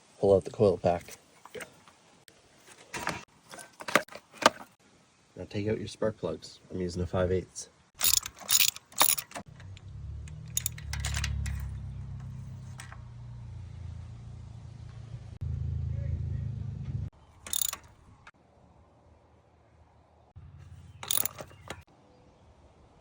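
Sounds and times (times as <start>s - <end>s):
ratchet clinking: 8.0s - 13.0s, 17.4s - 18.0s, 21.0s - 21.8s
low engine rumble: 9.4s - 18.3s.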